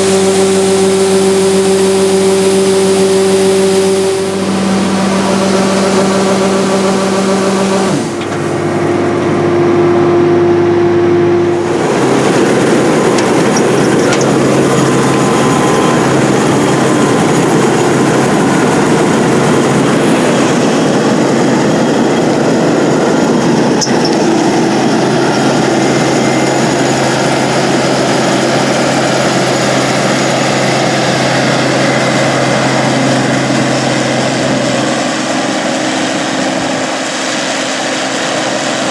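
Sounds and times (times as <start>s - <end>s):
combine harvester engine hum: 0.0s - 38.9s
dense mechanical machinery noise: 0.0s - 38.9s.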